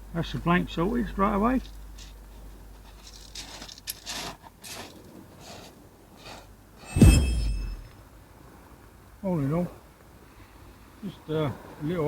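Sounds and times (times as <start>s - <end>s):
soft rustling: 1.6s - 6.9s
loud thump with low rumble: 7.0s - 7.9s.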